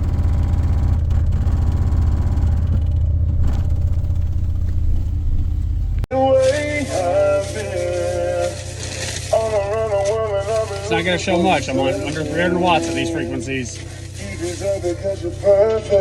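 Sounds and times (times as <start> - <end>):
deep bass from subwoofers: 0.0 - 6.1.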